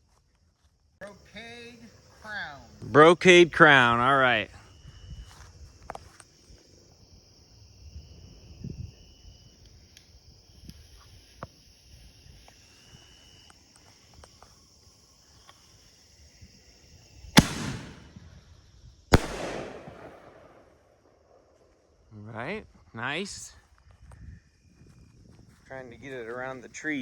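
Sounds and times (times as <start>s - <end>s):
insects chirring: 0.0s - 27.0s
firework shell bangs: 17.4s - 18.1s.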